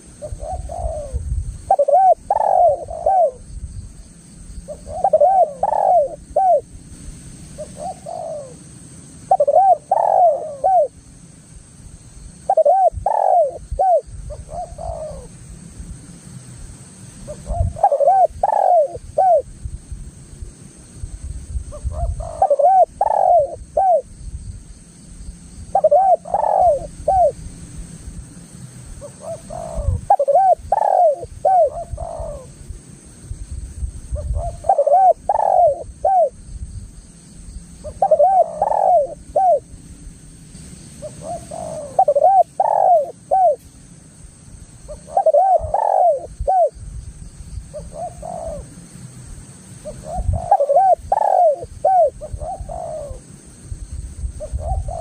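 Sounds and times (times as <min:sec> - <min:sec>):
dove cooing: 0:00.0 - 0:03.5, 0:04.7 - 0:06.7, 0:07.6 - 0:08.7, 0:09.3 - 0:11.0, 0:12.4 - 0:15.4, 0:17.3 - 0:19.5, 0:21.7 - 0:24.1, 0:25.7 - 0:27.4, 0:29.0 - 0:32.6, 0:34.1 - 0:36.4, 0:37.8 - 0:39.7, 0:41.0 - 0:43.6, 0:44.9 - 0:46.8, 0:47.7 - 0:48.8, 0:49.8 - 0:53.3, 0:54.4 - 0:55.0.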